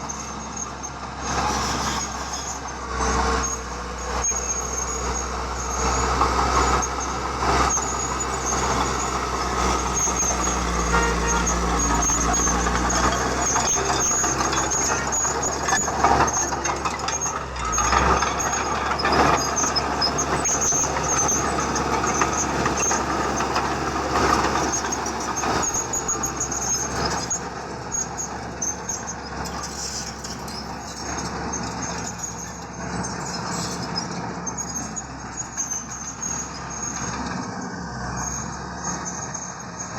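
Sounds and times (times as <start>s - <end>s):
diesel engine rumble: 0.0s - 39.9s
thin high squeal: 1.5s - 2.7s, 7.7s - 37.0s.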